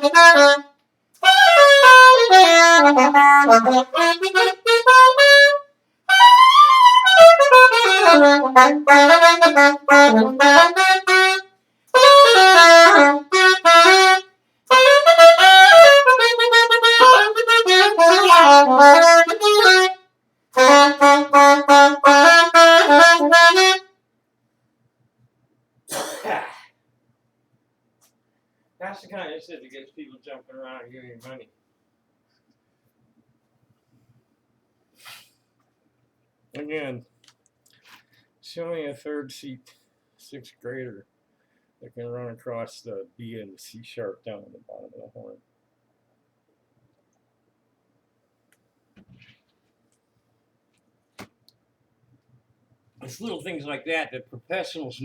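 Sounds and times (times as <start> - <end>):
solo saxophone melody: 0.0 - 24.0.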